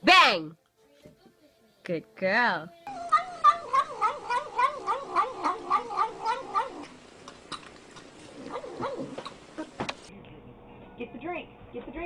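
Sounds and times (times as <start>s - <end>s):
animal wavering call: 2.9s - 6.9s.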